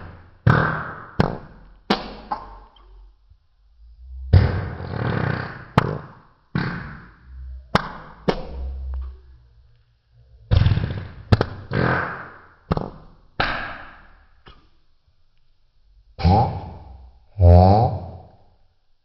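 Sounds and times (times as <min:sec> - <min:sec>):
hand farts: 0:00.0 - 0:03.0, 0:04.0 - 0:09.2, 0:10.4 - 0:14.6, 0:16.2 - 0:18.3.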